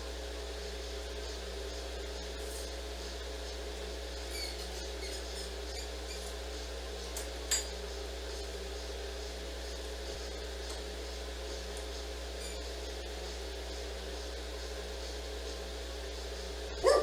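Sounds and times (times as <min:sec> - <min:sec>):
steady room hum: 0:00.0 - 0:17.0
faint high squeaks: 0:04.3 - 0:06.4.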